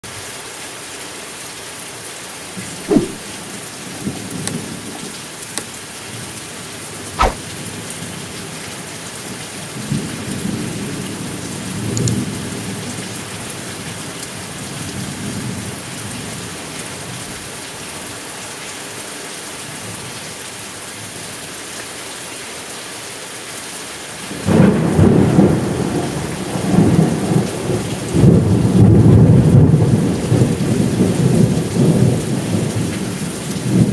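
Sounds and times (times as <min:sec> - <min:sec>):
steady rain falling: 0:08.6 - 0:33.9.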